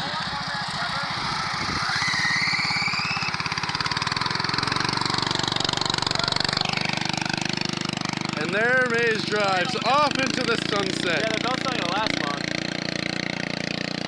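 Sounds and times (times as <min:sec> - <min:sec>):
small engine revving: 0:00.0 - 0:14.0
high rising belt squeal: 0:00.9 - 0:07.4.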